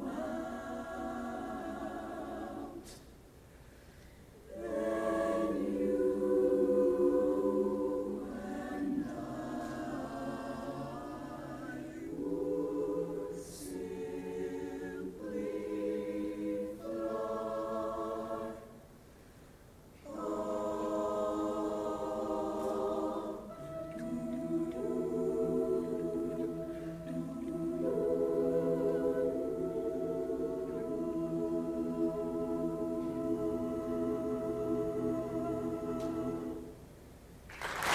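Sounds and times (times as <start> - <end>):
choir singing held chords: 0.0 - 3.0, 4.5 - 19.0, 20.0 - 36.9.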